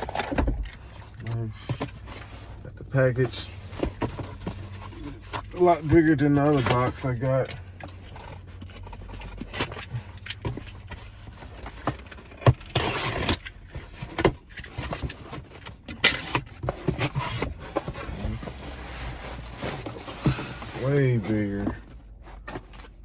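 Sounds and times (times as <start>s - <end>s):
cardboard box knocking and rustling: 9.0s - 23.0s.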